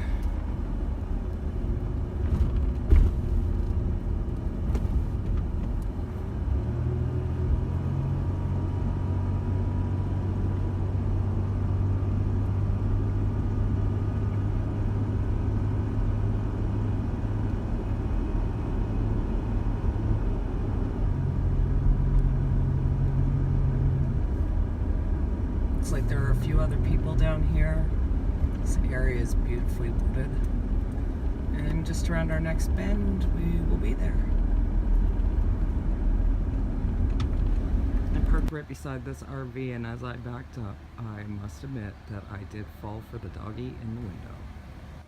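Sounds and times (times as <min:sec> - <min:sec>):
van engine and road rumble: 0:00.0 - 0:45.0
thump: 0:02.3 - 0:03.3.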